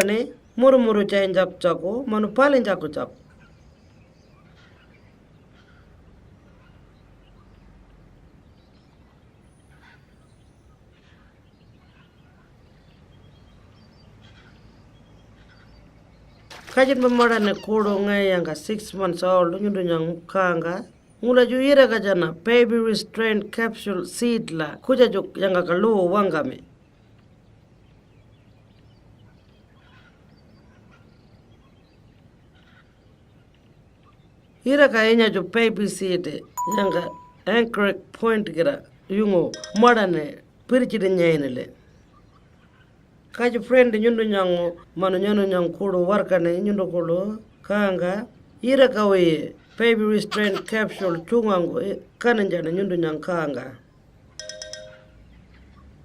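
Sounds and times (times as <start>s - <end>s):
faint bird chirps: 3.1s - 18.0s, 36.4s - 37.5s
low steady hum: 36.3s - 37.9s.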